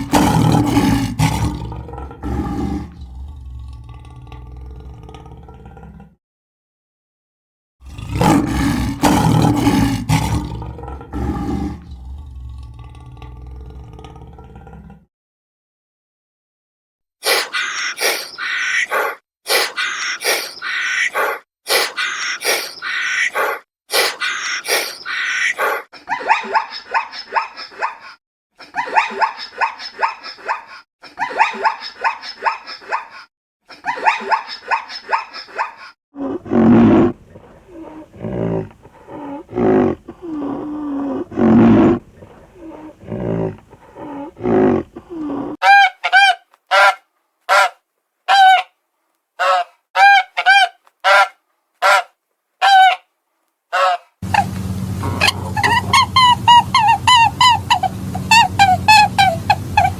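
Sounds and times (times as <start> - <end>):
loud low animal calls: 33.8 - 45.6, 54.2 - 59.9
high rapid animal chattering: 54.2 - 59.9.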